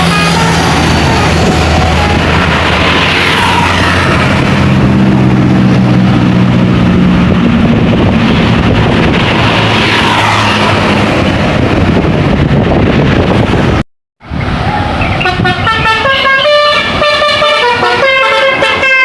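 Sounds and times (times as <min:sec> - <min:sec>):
heavy vehicle engine running: 0:00.0 - 0:09.8
traffic passing: 0:00.0 - 0:19.0.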